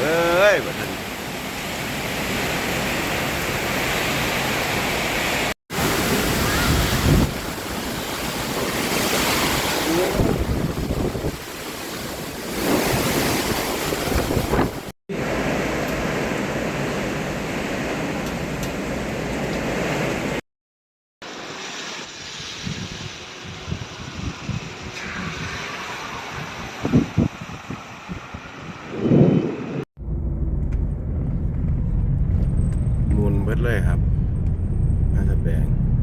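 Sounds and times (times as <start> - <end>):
storm wind buffeting microphone: 5.8 - 18.6, 22.5 - 36.0.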